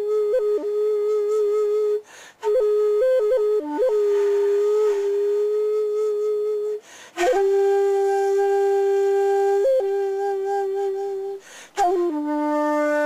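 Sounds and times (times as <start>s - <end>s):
bamboo flute solo: 0.0s - 13.0s.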